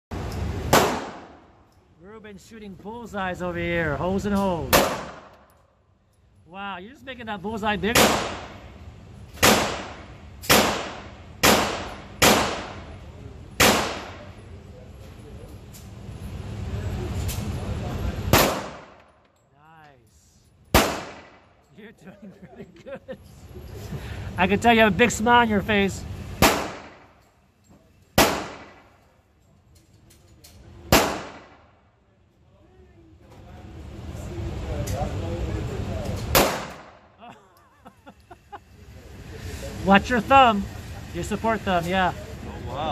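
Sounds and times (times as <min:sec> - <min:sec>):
pistol shots with echo: 0:00.7 - 0:01.4, 0:04.7 - 0:05.3, 0:08.0 - 0:08.6, 0:09.4 - 0:12.9, 0:13.6 - 0:14.3, 0:18.3 - 0:19.0, 0:20.7 - 0:21.5, 0:26.4 - 0:27.1, 0:28.2 - 0:28.9, 0:30.9 - 0:31.7, 0:36.3 - 0:37.0.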